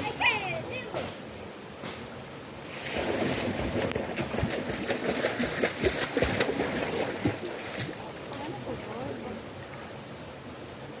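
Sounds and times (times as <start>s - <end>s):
water splashing and sloshing: 2.6s - 10.0s.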